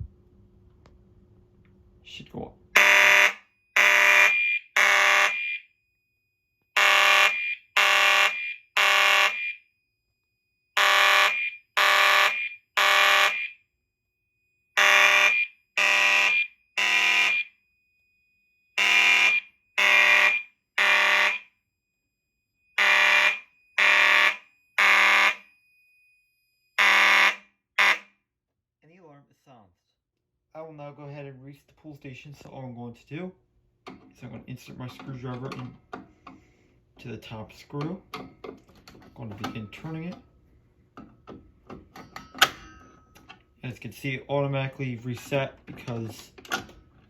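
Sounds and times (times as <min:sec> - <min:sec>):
fire alarm horn blasts: 0:02.7 - 0:06.0, 0:06.7 - 0:13.7, 0:14.7 - 0:21.7, 0:22.7 - 0:28.2.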